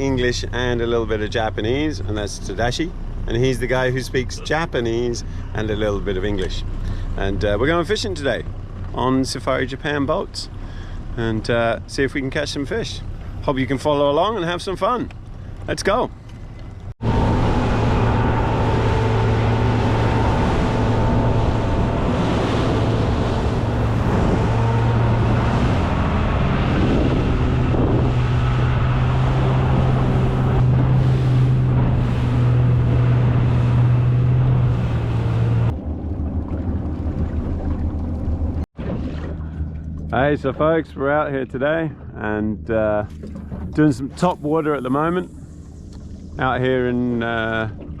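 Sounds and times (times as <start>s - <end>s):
outboard motor running: 0.0s - 48.0s
water rushing past hull: 0.0s - 48.0s
wind on microphone: 17.0s - 38.6s.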